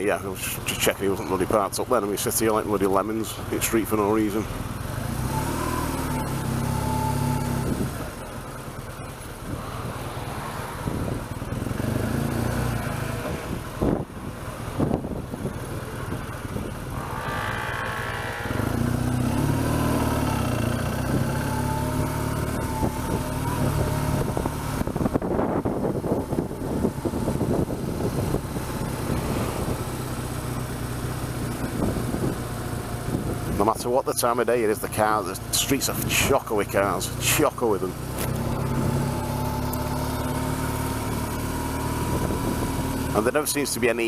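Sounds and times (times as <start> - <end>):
motorcycle engine running: 10.8 - 33.6, 37.9 - 43.4.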